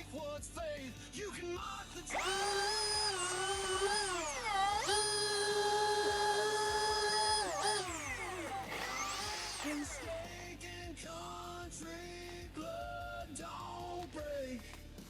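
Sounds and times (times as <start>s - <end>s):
electric chainsaw whine: 1.9s - 10.8s.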